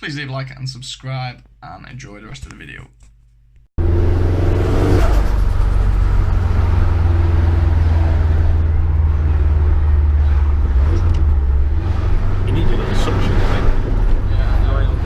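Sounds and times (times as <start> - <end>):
car engine low drone: 3.8 - 15.0.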